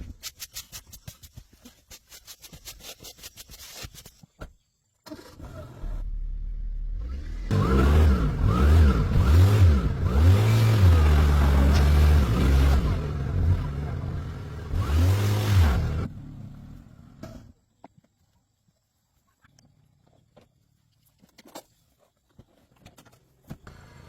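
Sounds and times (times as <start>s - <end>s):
car engine revving: 5.7s - 17.3s.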